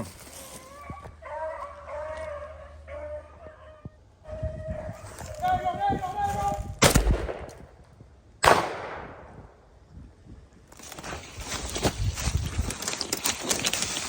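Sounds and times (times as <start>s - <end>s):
dry brush rustling: 0.0s - 1.2s, 10.7s - 14.0s
shotgun shots: 6.8s - 7.7s, 8.4s - 9.5s.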